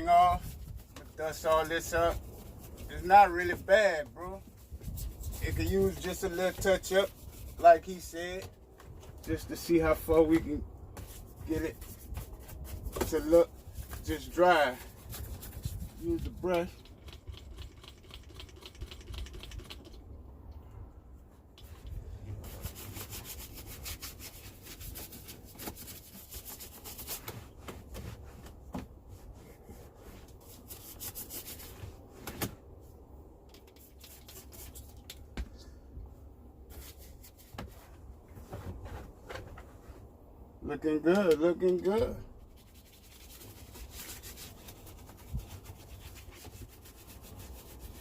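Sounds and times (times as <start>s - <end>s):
brush scrubbing surfaces: 22.4s - 27.6s, 29.2s - 32.0s, 42.5s - 48.0s.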